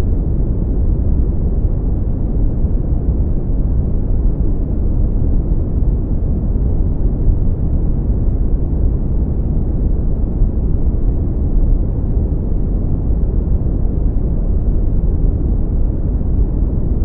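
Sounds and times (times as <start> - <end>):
deep brown noise rumble: 0.0 - 17.0.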